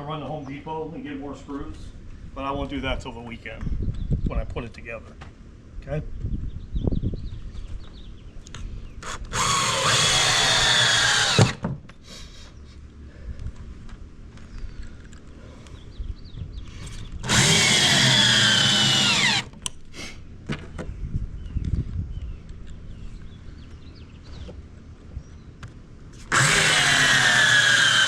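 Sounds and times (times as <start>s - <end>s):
power drill driving screws: 9.0s - 11.6s, 17.2s - 19.5s, 26.2s - 28.0s.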